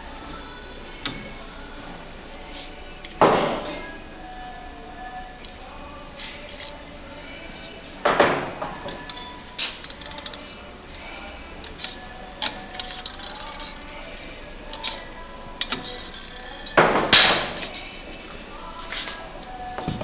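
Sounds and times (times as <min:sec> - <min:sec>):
small parts clicking and tapping: 0:08.9 - 0:17.8.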